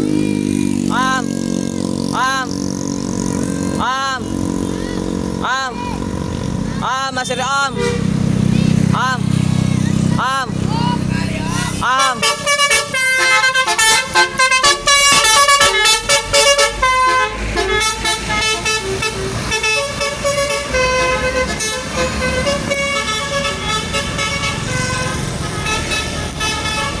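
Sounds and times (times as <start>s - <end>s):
bus musical horn playing a tune: 7.4s - 8.3s, 11.5s - 27.0s.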